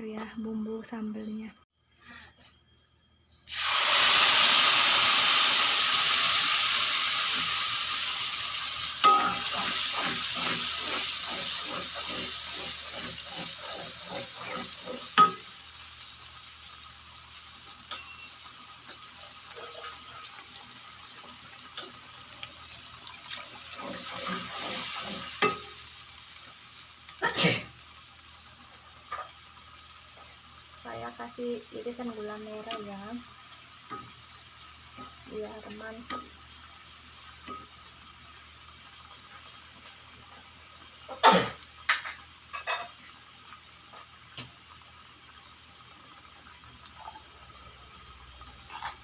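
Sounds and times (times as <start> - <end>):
spice paste sizzling in oil: 3.4 - 49.0
spatula stirring in pan: 9.0 - 15.5, 19.4 - 20.4, 23.3 - 25.8.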